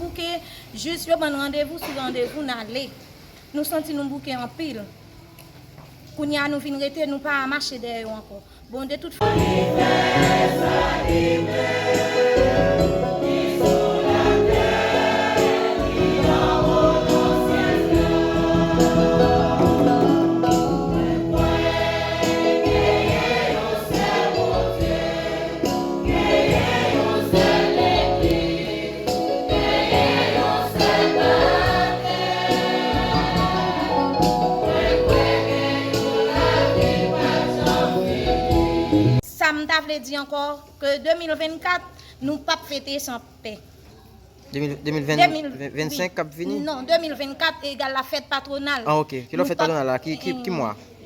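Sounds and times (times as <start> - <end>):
pulsing beat: 9.2 - 38.9
choir singing gospel music: 9.2 - 39.2.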